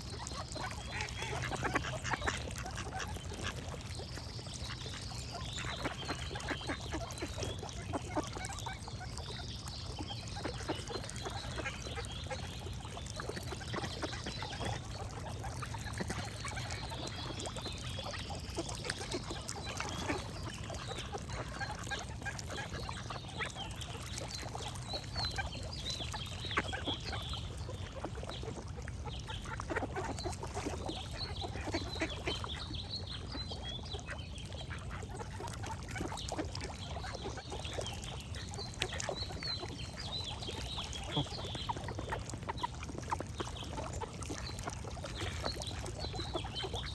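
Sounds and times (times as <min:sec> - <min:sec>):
ducks quacking: 0:00.8 - 0:03.5
birds singing: 0:36.0 - 0:42.7.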